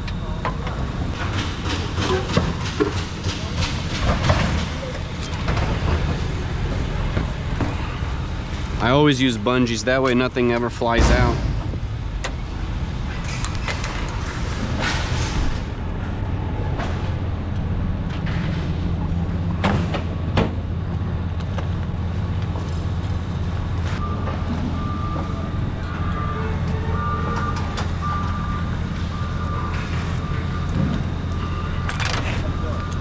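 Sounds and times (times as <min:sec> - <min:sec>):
truck engine running: 0:00.0 - 0:33.0
reversing beeper: 0:24.0 - 0:33.0.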